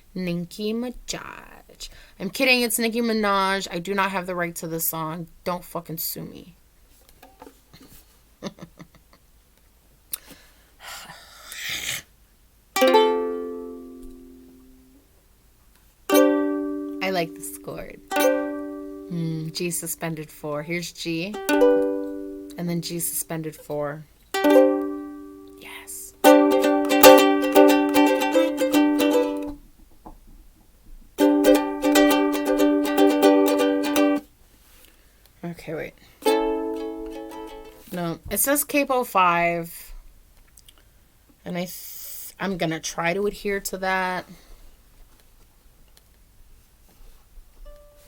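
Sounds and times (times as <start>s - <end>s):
acoustic chord strummed: 12.8s - 14.9s, 16.1s - 19.6s, 21.4s - 23.2s, 24.4s - 25.6s, 26.2s - 29.6s, 31.2s - 34.2s, 36.3s - 37.8s
rustle: 34.3s - 35.4s.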